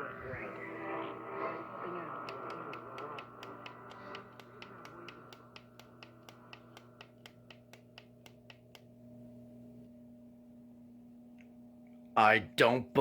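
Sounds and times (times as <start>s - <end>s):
faint radio hum: 0.0s - 8.5s.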